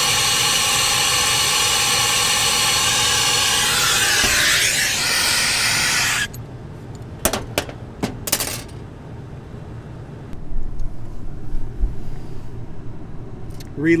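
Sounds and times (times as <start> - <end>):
gas hissing: 0.0 - 6.4.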